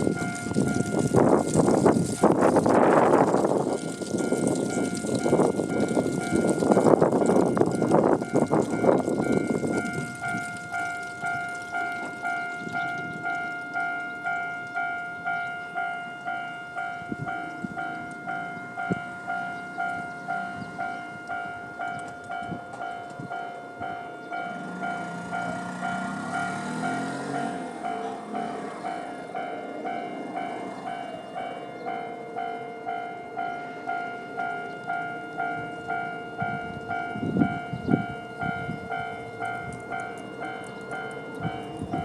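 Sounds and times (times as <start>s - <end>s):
railcar rumble: 0.0s - 42.0s
level crossing bell ringing: 11.3s - 42.0s.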